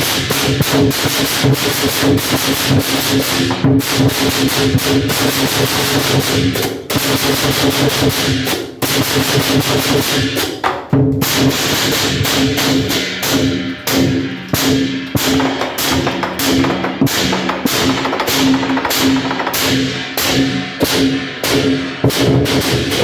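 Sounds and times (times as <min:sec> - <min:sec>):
rapid drumming: 0:00.0 - 0:23.0.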